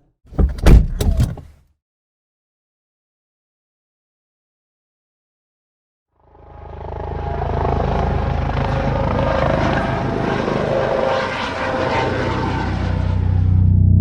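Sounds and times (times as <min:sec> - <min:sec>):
helicopter rotor chopping: 0:06.6 - 0:13.6.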